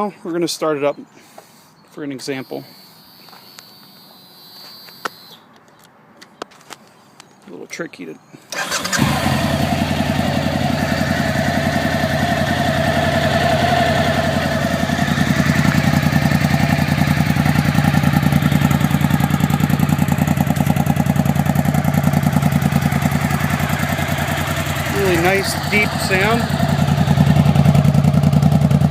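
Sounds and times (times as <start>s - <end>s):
motorcycle engine idling: 8.6s - 28.9s.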